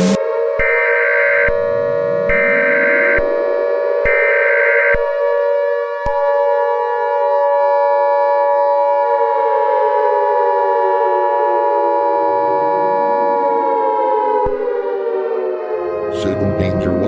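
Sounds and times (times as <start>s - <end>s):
steady high alert tone: 0.0s - 0.2s
rising siren-like tone: 0.0s - 5.8s, 7.7s - 17.0s.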